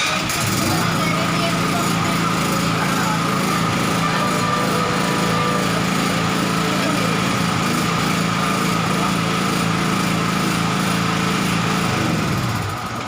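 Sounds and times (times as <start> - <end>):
generator engine running: 0.0 - 13.0.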